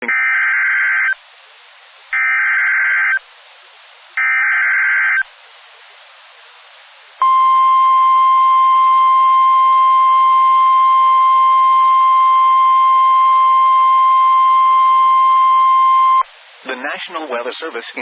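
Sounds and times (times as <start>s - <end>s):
radio hiss: 16.2s - 18.0s.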